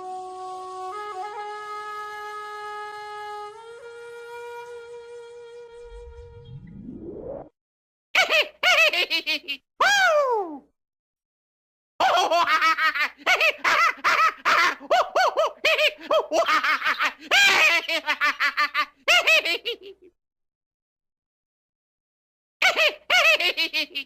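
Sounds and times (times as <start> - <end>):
man laughing crazily: 8.2 - 9.6, 12.0 - 20.1, 22.6 - 24.0.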